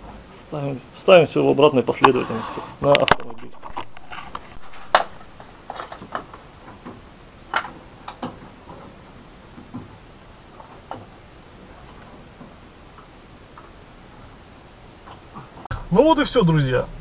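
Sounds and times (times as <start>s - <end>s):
clicks and knocks of parts: 2.9s - 9.0s.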